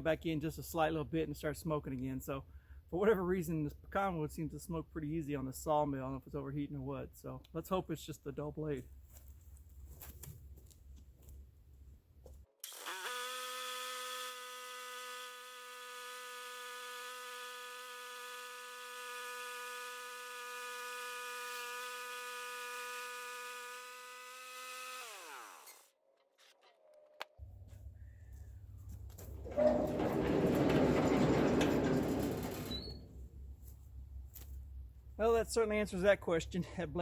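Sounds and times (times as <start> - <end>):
band sawmill whining: 29.2 - 33.5.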